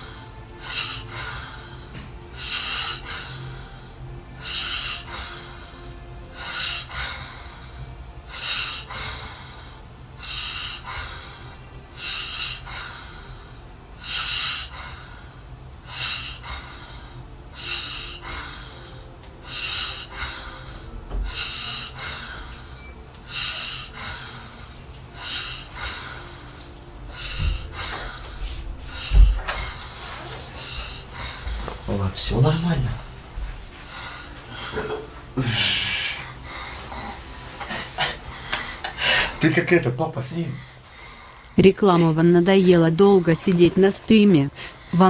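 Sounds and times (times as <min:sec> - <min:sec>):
steady low hum: 0:00.0 - 0:45.0
low thump: 0:27.4 - 0:29.9.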